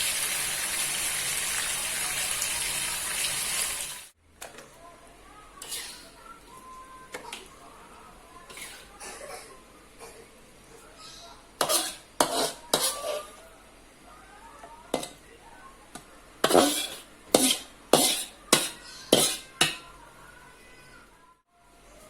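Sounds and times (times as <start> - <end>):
kitchen utensils clattering: 11.6 - 13.3, 16.4 - 19.9.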